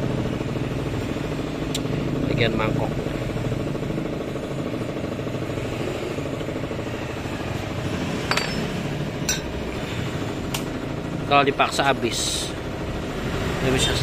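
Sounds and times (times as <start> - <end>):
mechanical engine rumble: 0.0 - 14.0
metallic clinks: 8.2 - 9.5.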